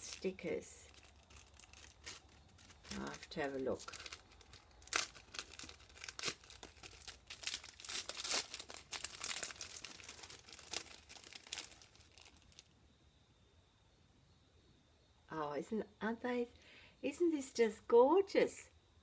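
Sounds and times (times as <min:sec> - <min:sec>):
crinkly packaging being torn open: 0:00.0 - 0:12.7.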